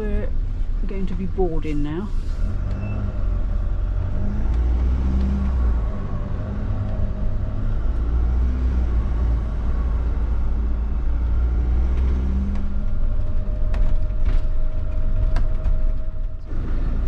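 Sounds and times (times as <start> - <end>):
diesel engine rumbling: 0.0 - 17.0.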